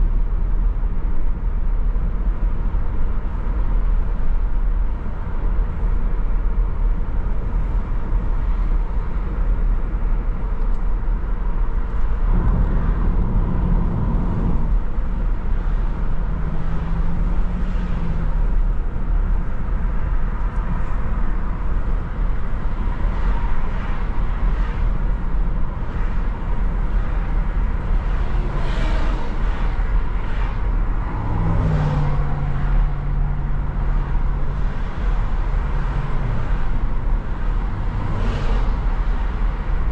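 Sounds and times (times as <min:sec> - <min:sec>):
car engine and road noise: 0:00.0 - 0:39.9
passing traffic swishes: 0:00.0 - 0:39.9
low hum: 0:11.6 - 0:21.0.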